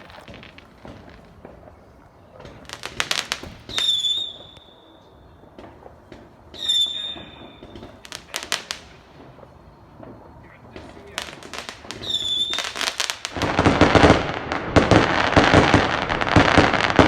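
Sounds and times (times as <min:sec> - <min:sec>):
fireworks crackling bangs: 0:00.0 - 0:17.0
firework whistle: 0:02.7 - 0:05.2, 0:06.1 - 0:14.3.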